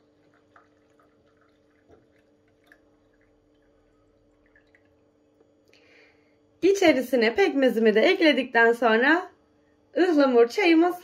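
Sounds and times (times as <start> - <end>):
tea dripping into a glass: 0.0 - 5.2
low steady hum: 0.0 - 11.0.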